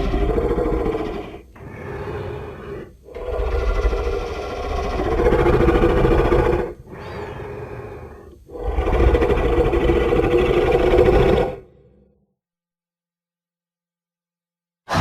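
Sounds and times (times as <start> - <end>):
dinosaur roar: 0.0 - 12.2.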